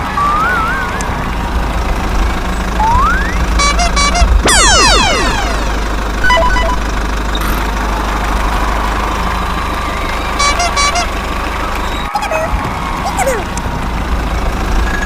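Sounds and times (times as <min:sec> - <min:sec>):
short pitched toots: 0:00.0 - 0:01.3, 0:02.8 - 0:07.0
low vehicle engine rumble: 0:00.0 - 0:15.0.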